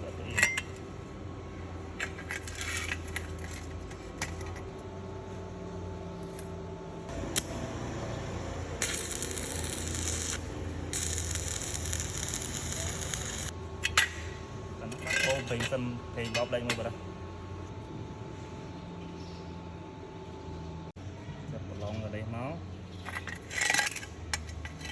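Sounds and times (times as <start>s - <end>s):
low steady hum: 0.0s - 21.0s
small metal parts clinking: 8.8s - 14.0s.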